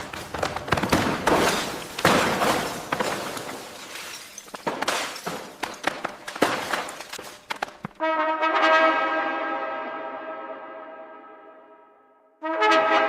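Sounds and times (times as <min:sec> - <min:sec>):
material breaking and falling: 0:00.0 - 0:08.0
shattering crashes: 0:00.0 - 0:08.0.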